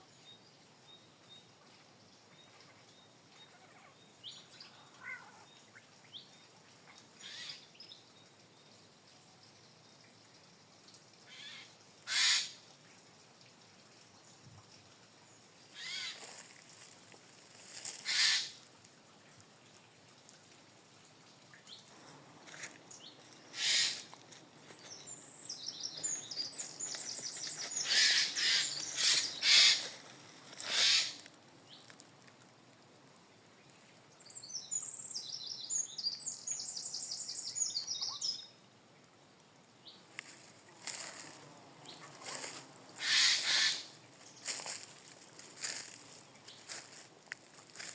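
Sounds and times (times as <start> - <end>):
harsh bird calls: 11.3 - 12.5, 15.8 - 16.2, 18.0 - 18.5, 23.5 - 24.1, 25.9 - 29.9, 30.7 - 31.2, 43.0 - 43.9
birds twittering: 22.9 - 24.1, 24.8 - 30.0, 30.6 - 31.2, 40.9 - 44.9.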